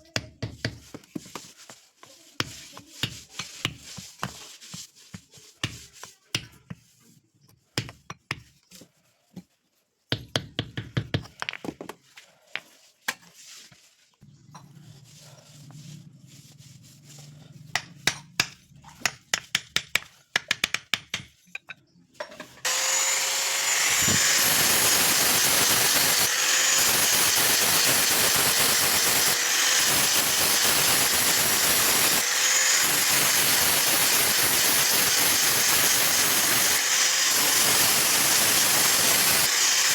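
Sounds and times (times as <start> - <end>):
loud hissing machine: 22.7 - 39.9.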